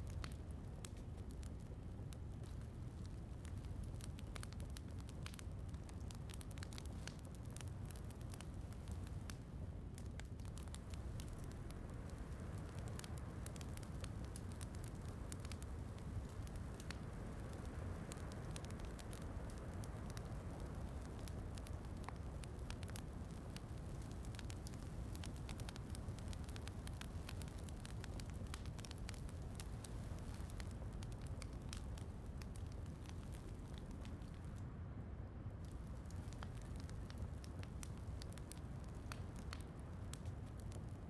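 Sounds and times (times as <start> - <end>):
fireplace crackling and popping: 0.0 - 41.0.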